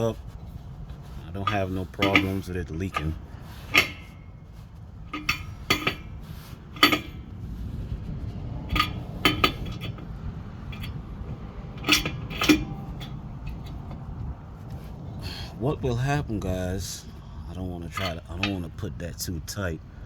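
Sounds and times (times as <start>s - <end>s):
wrench clinking on metal: 0.0s - 7.4s, 8.6s - 14.3s, 17.8s - 18.9s
low rumble: 2.6s - 17.9s.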